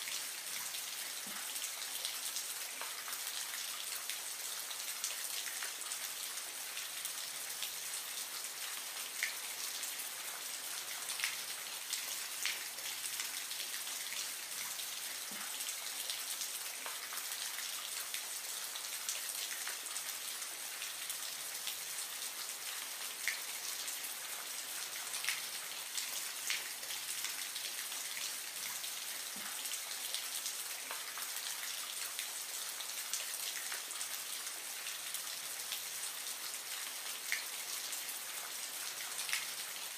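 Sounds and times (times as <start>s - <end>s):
small drip-like ticks: 0.1s - 4.2s, 23.2s - 39.9s.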